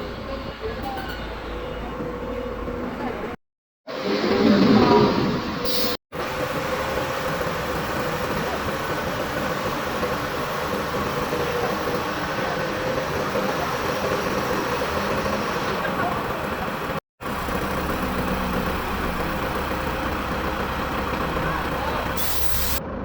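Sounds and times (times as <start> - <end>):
air compressor running: 5.6 - 22.8.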